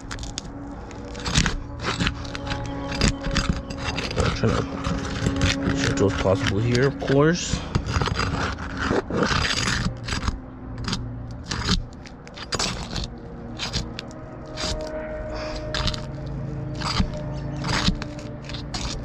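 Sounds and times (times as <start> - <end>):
pry bar scraping shingles: 0.0 - 19.0
steady low hum: 0.0 - 19.0.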